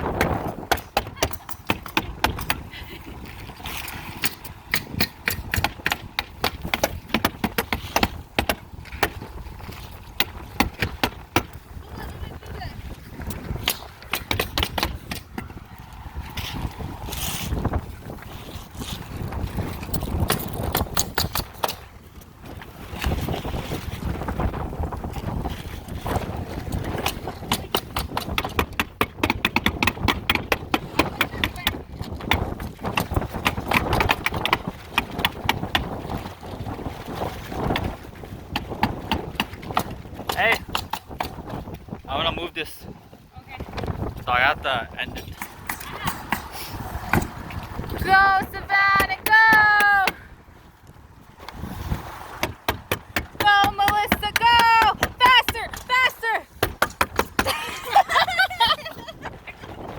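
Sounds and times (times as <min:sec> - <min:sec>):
wind rumble on microphone: 0:00.0 - 0:59.9
rapid sharp knocks: 0:27.5 - 0:35.8.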